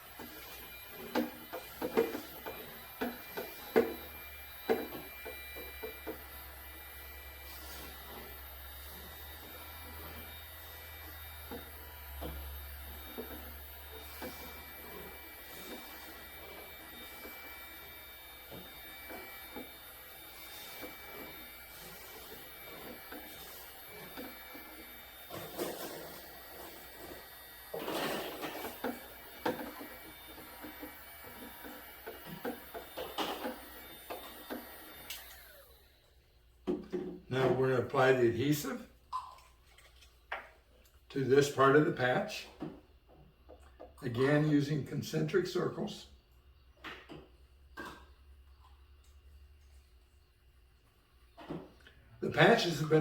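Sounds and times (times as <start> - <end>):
heat gun running: 0.0 - 38.8, 52.3 - 53.0.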